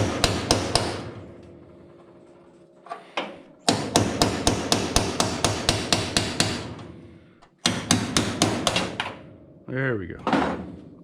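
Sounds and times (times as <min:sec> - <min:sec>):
hammer on sheet metal: 0:00.0 - 0:01.2, 0:03.6 - 0:07.0, 0:07.6 - 0:09.3.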